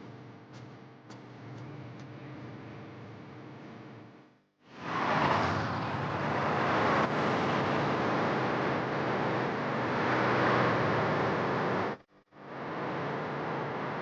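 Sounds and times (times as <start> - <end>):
car engine and road noise: 4.7 - 14.0.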